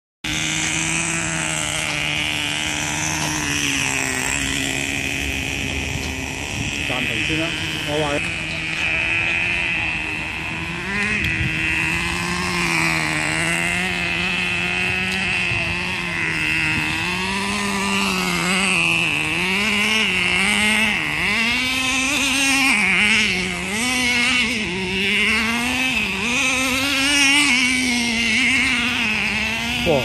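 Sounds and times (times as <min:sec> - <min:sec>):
toy car motor revving: 0:00.2 - 0:30.0.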